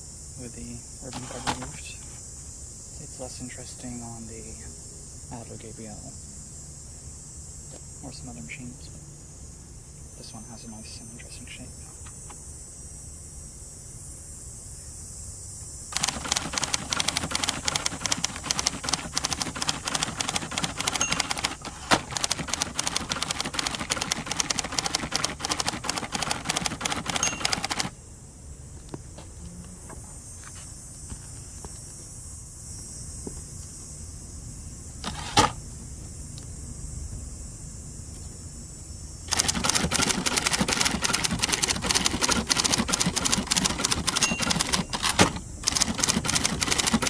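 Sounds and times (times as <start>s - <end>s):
loud typewriter clack: 1.1s - 1.8s, 15.9s - 27.9s, 35.0s - 35.6s, 39.3s - 47.0s
typewriter keystrokes: 1.1s - 1.8s, 15.9s - 27.9s, 35.0s - 35.6s, 39.3s - 47.0s.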